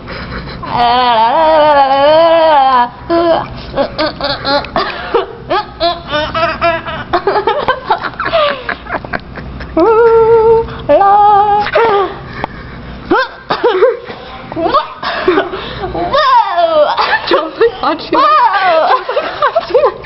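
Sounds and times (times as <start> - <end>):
person yelping and giggling: 0.5 - 10.6, 13.1 - 14.0, 14.6 - 17.5.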